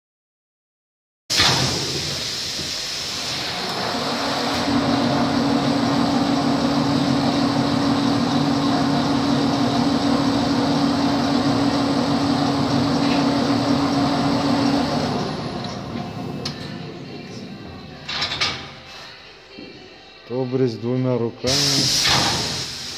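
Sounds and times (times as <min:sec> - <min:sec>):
paper rewinding machine running: 0:03.6 - 0:16.4.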